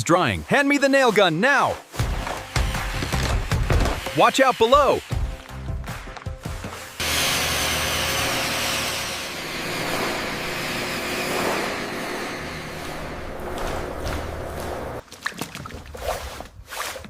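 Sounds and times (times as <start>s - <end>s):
low machine hum: 9.2s - 15.0s.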